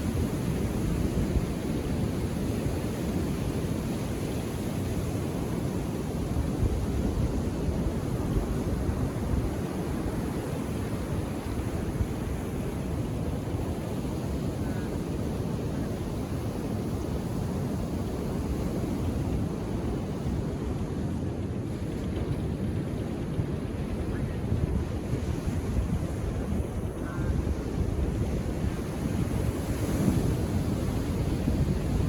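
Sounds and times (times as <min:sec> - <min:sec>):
wind on microphone: 0:00.0 - 0:32.0.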